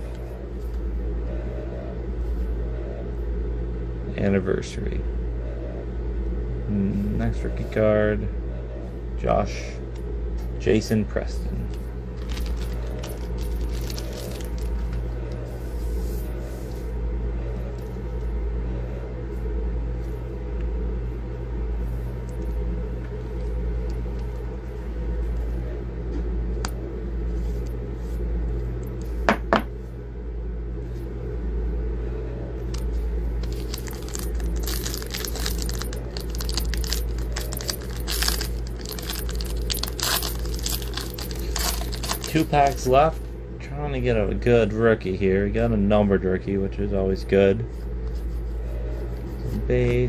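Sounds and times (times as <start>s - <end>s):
steady low hum: 0.0s - 50.0s
foil wrapper crinkling and tearing: 33.6s - 42.6s.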